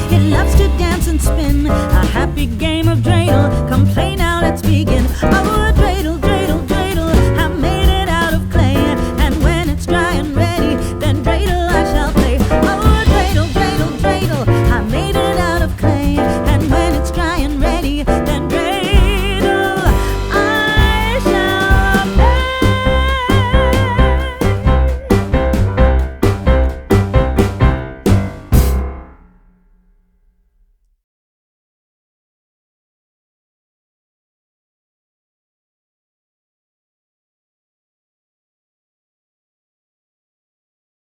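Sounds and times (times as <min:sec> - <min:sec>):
music with vocals and beat: 0:00.0 - 0:25.8.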